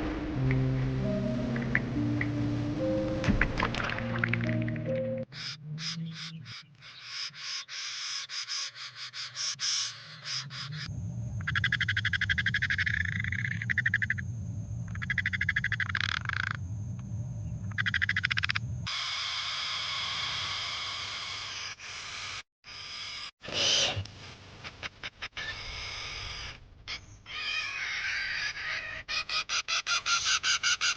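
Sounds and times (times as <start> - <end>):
low rumble: 0.0 - 5.2, 10.9 - 12.5
frogs trilling: 5.3 - 14.3, 14.9 - 16.6, 17.6 - 23.2.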